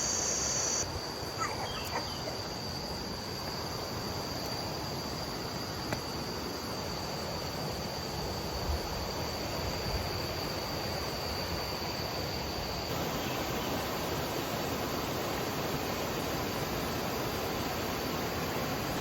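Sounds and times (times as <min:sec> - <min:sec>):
insect buzzing: 0:00.0 - 0:00.8.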